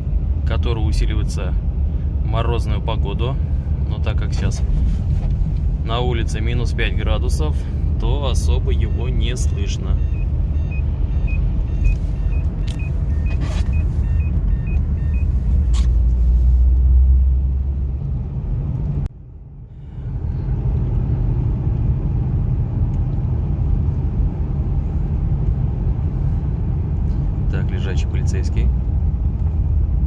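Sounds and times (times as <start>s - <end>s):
car cabin rumble: 2.5s - 30.0s
short electronic beeps: 8.8s - 15.4s.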